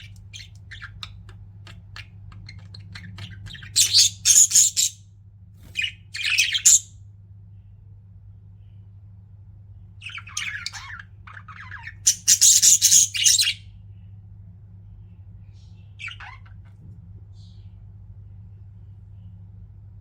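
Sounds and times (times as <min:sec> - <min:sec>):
budgerigars chirping: 0:00.0 - 0:05.0, 0:05.7 - 0:06.9, 0:10.0 - 0:13.6, 0:15.8 - 0:16.6.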